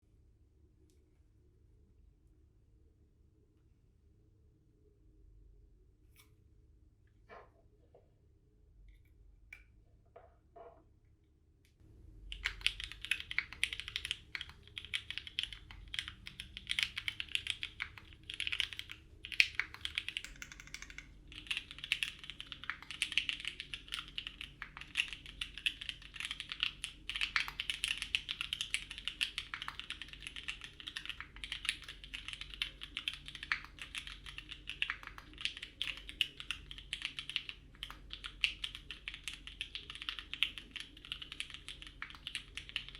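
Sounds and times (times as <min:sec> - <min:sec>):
mechanical keyboard typing: 0:12.3 - 0:42.9.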